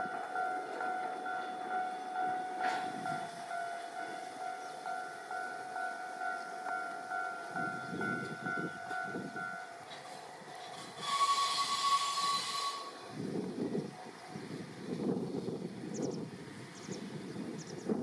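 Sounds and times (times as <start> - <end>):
pulsing two-tone bell ringing: 0.0 - 9.8
train rumbling past on rails: 0.0 - 18.0
train horn blast: 10.6 - 13.2.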